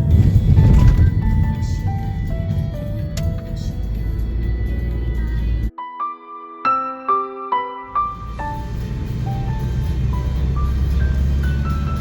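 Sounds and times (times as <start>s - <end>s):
steady low rumble: 0.0s - 5.7s
simple melody of held notes: 0.6s - 12.0s.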